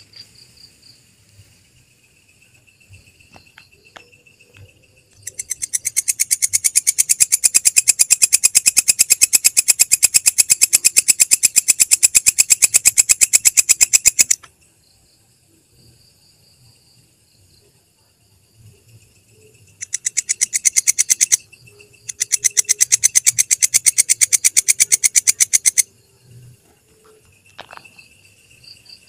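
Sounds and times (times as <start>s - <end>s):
faint chirps: 0.0s - 15.1s, 16.6s - 29.0s
katydid shrill pulsing call: 5.2s - 14.4s, 19.8s - 25.9s.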